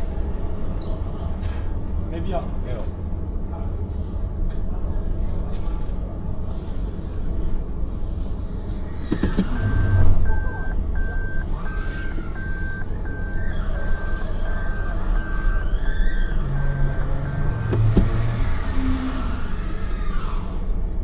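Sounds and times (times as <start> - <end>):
low traffic rumble: 0.0 - 21.0
vehicle warning alarm beeping: 9.1 - 20.4.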